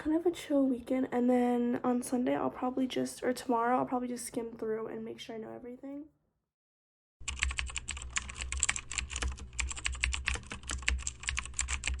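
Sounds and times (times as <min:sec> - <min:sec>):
fast keyboard typing: 0:07.2 - 0:12.0.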